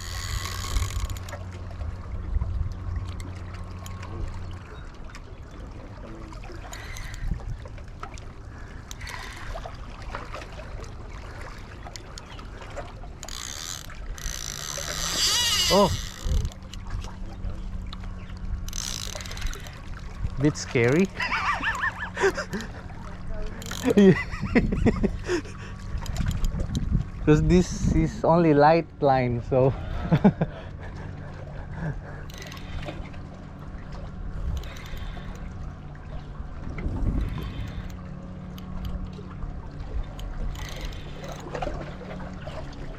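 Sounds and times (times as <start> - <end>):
steady low rumble: 0.0 - 10.1, 15.8 - 42.9
boat motor humming: 0.0 - 42.9
water lapping against hull: 0.0 - 42.9
small knocks and clicks: 40.1 - 41.6.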